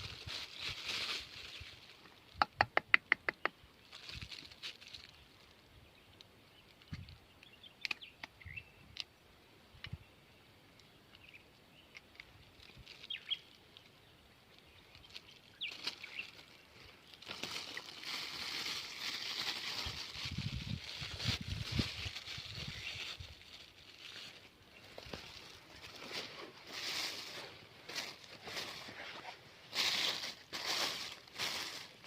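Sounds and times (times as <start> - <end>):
rustling and handling noise: 0.0 - 2.4, 3.4 - 8.2, 11.9 - 32.0.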